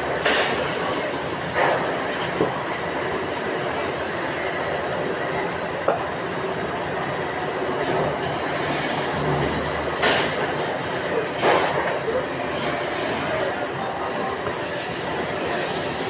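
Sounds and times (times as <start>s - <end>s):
machine running with faint squeal: 8.3s - 16.0s.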